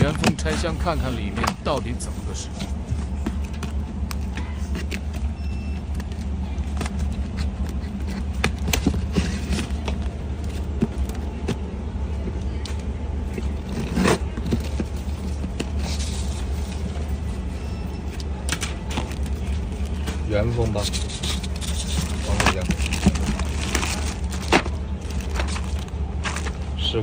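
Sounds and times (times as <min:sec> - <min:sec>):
steady low hum: 0:00.0 - 0:27.0
packaging clicks and taps: 0:02.6 - 0:11.6, 0:18.2 - 0:26.6.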